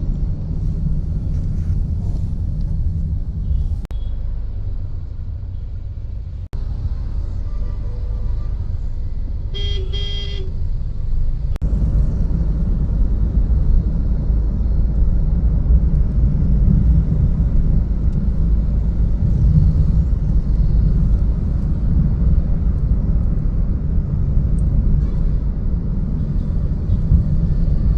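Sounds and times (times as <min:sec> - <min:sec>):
traffic rumble: 0:00.0 - 0:27.9
vehicle horn honking: 0:09.6 - 0:10.5.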